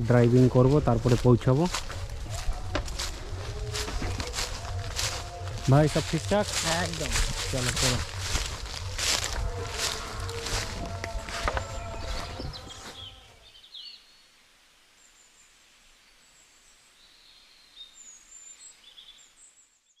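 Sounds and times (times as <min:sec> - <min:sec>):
small birds chirping: 0:01.0 - 0:14.2.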